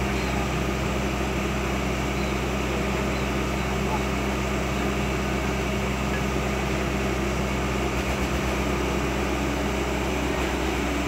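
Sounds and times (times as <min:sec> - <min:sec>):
excavator diesel engine droning: 0:00.0 - 0:11.0.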